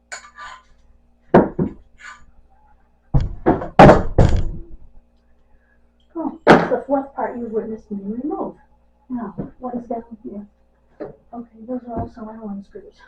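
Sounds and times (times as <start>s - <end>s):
treadmill parts knocking: 3.2s - 4.8s.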